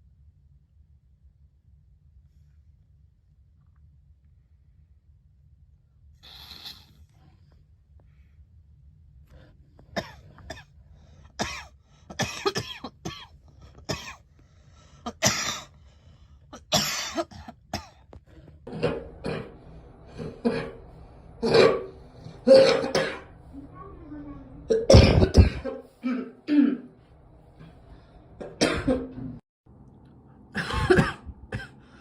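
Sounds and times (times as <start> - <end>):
girl coughing: 10.0 - 10.7, 11.4 - 14.2, 15.1 - 15.7, 16.6 - 18.0, 18.7 - 26.9, 28.4 - 29.3, 30.6 - 31.8.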